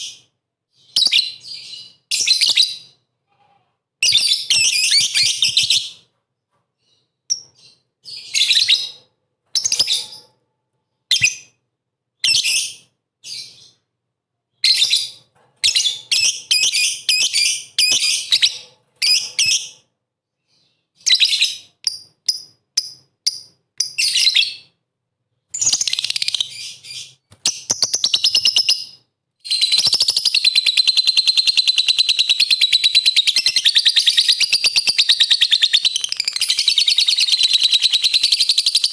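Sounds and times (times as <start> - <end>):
lovebird chattering chirps: 25.6 - 38.9.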